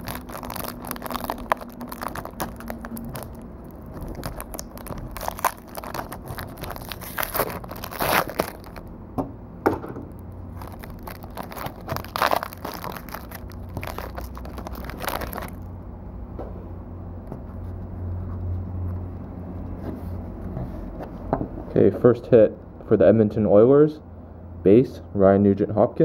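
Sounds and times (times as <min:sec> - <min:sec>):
cardboard tearing: 0:00.0 - 0:08.8, 0:10.6 - 0:15.6
plastic wrapper crinkling: 0:00.0 - 0:08.9, 0:10.1 - 0:15.7.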